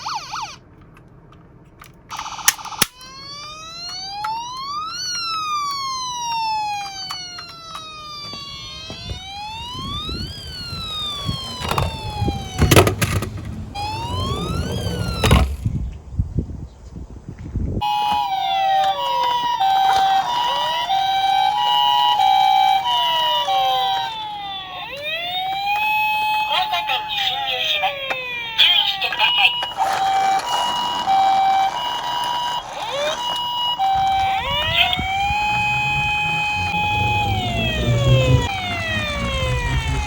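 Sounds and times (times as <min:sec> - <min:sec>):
two-note hi-lo siren: 0:00.0 - 0:00.6, 0:02.5 - 0:15.9, 0:17.8 - 0:40.0
wailing siren: 0:00.0 - 0:00.6, 0:02.1 - 0:15.9, 0:17.8 - 0:40.0
toy cars rolling and clattering: 0:00.7 - 0:08.1, 0:09.8 - 0:15.8, 0:18.7 - 0:25.0, 0:27.0 - 0:35.6.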